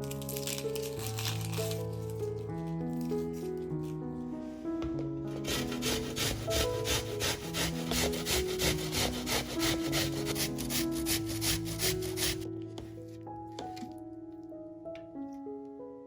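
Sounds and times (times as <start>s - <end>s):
background music: 0.0s - 16.0s
food rasping on a hand grater: 5.4s - 12.4s.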